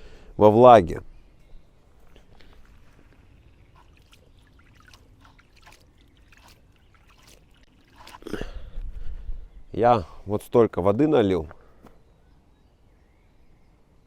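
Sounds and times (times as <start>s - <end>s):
water trickling into bait mix: 1.8s - 8.9s.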